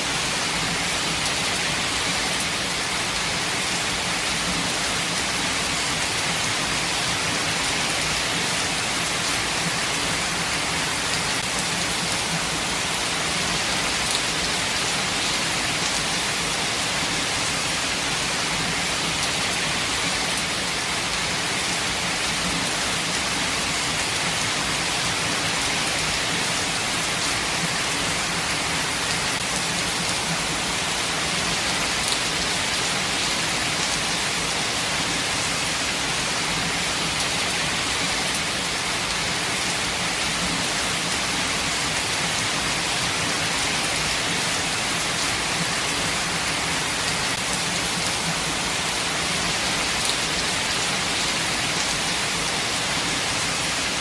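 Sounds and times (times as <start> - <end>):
rain falling on foliage: 0.0 - 54.0.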